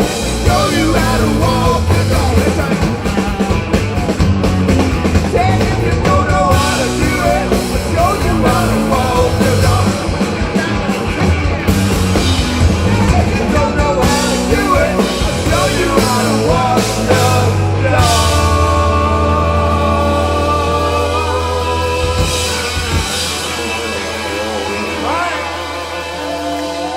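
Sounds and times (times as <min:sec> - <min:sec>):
drum kit: 0:00.0 - 0:26.9
rock music with singing: 0:00.0 - 0:26.9.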